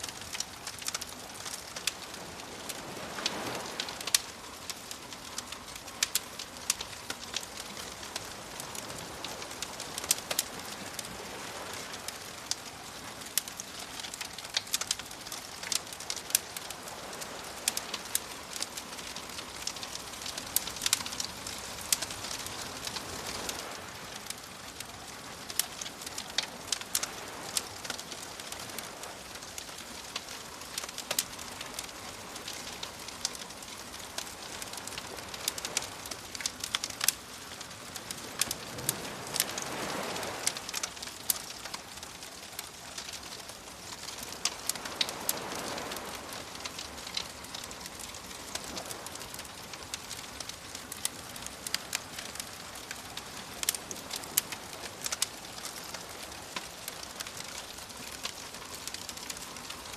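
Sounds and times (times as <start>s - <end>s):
waves washing: 0.0s - 59.9s
wood fire crackling: 0.0s - 59.9s.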